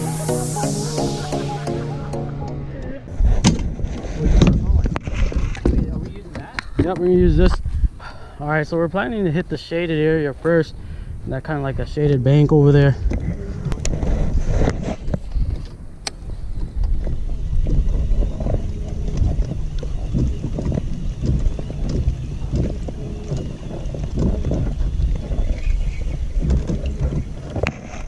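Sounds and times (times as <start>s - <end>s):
wind buffeting microphone: 2.6s - 28.0s.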